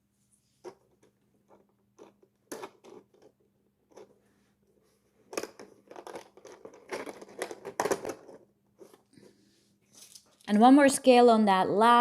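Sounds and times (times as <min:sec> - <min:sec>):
plastic scales clicking and scratching: 0:05.3 - 0:09.1.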